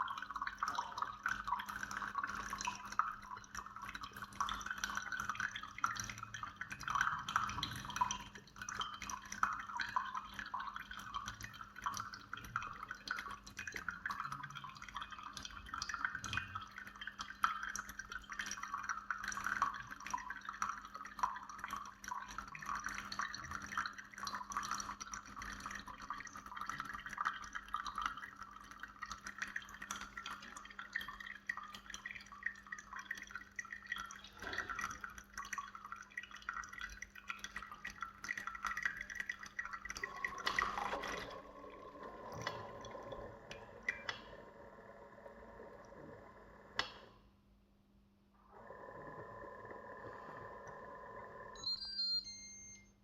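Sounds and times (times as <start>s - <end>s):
coffee dripping into a cup: 0.0s - 47.3s, 48.5s - 53.0s
coffee maker humming: 40.0s - 47.1s.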